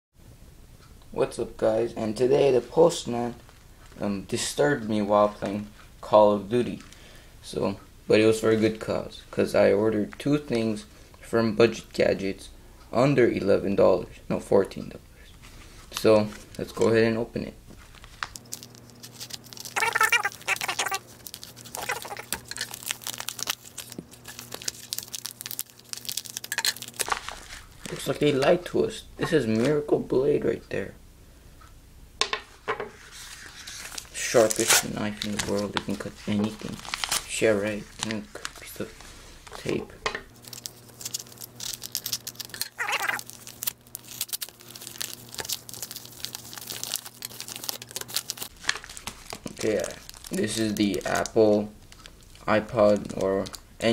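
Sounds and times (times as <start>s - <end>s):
faint steady hum: 0.2s - 53.9s
package wrapping torn and crinkled: 17.9s - 28.2s, 33.3s - 38.9s, 40.3s - 53.6s.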